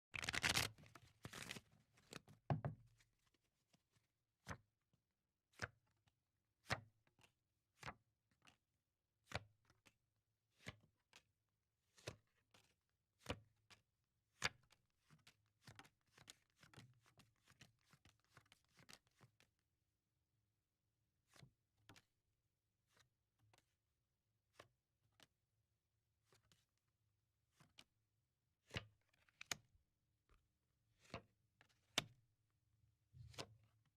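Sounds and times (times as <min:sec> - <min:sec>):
playing cards shuffled: 0:00.2 - 0:02.3.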